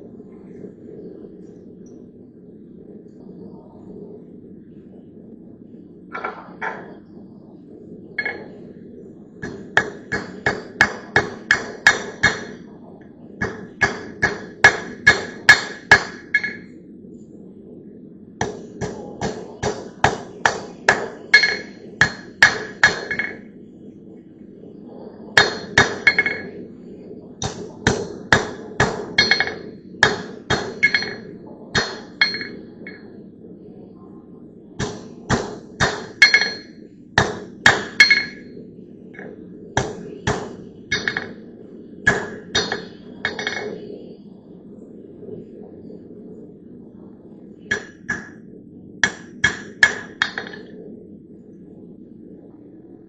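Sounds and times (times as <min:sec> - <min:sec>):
hammer striking steel: 0:09.4 - 0:12.6, 0:13.4 - 0:16.6, 0:18.8 - 0:23.4, 0:25.4 - 0:26.4, 0:27.4 - 0:31.2, 0:31.8 - 0:33.0, 0:34.8 - 0:38.4, 0:39.8 - 0:41.3, 0:42.1 - 0:43.7, 0:47.7 - 0:48.3, 0:49.0 - 0:50.6.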